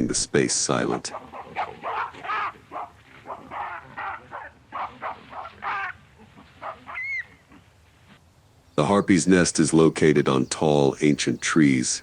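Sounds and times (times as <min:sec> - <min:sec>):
short animal calls: 0:01.1 - 0:07.8.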